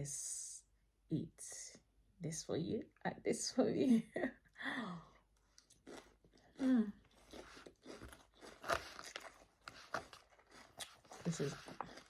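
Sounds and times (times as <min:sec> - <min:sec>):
crunching salad chewing: 0:05.6 - 0:12.0.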